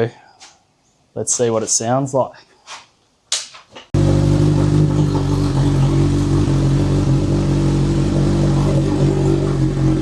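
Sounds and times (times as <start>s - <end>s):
motorcycle engine idling: 4.0s - 10.0s.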